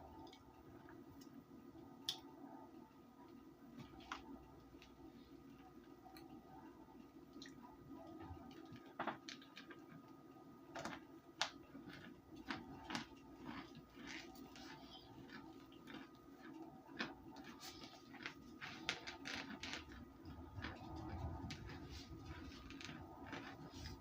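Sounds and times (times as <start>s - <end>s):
faint steady hum: 0.0s - 24.0s
person chewing crunchy food: 10.8s - 24.0s.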